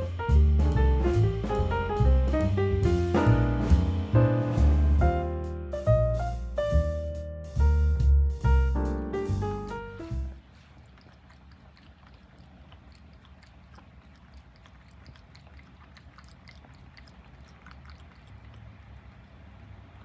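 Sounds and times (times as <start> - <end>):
cat lapping water: 10.4 - 20.0.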